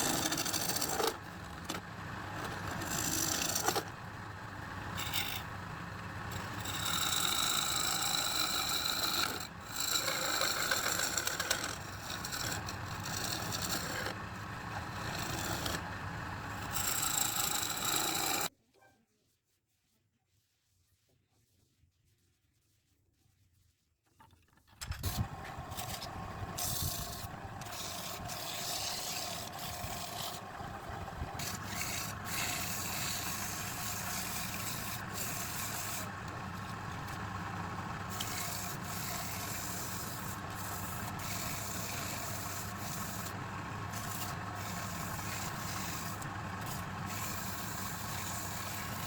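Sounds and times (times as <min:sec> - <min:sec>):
tool scraping spinning wood: 0:00.0 - 0:18.5, 0:24.1 - 0:49.0
wood lathe running: 0:00.0 - 0:18.5, 0:25.2 - 0:49.0.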